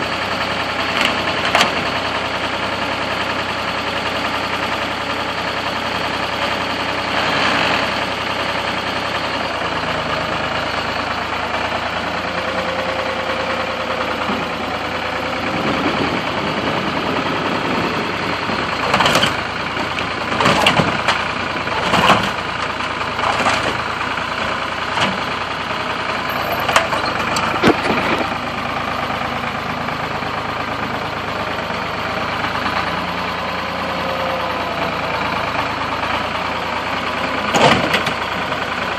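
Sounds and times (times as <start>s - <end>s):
machine engine running: 9.6s - 38.9s.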